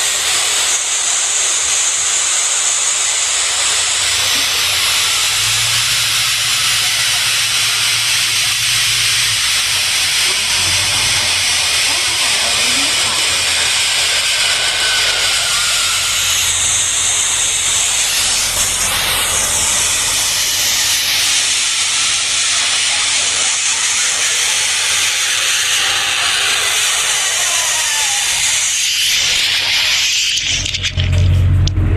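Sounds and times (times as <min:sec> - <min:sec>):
loud steady hiss: 0:00.0 - 0:31.6.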